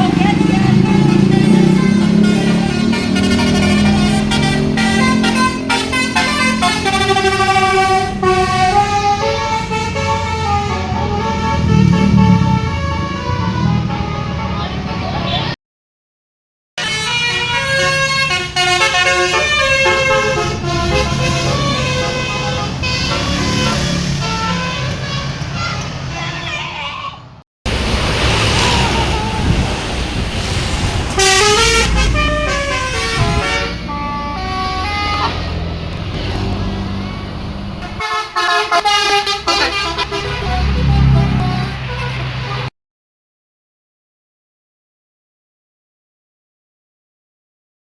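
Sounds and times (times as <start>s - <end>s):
bus musical horn playing tune: 0.0s - 15.1s, 16.8s - 26.2s, 31.1s - 36.0s, 37.8s - 42.7s
bus engine running: 0.0s - 15.5s, 16.8s - 26.8s, 27.7s - 42.7s.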